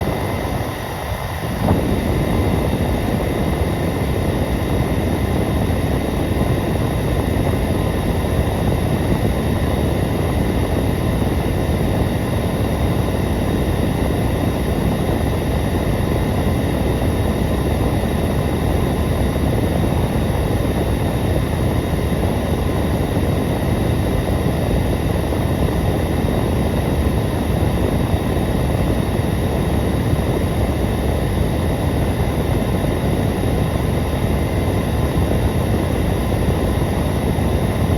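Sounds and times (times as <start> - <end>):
hair dryer running: 0.0 - 6.8.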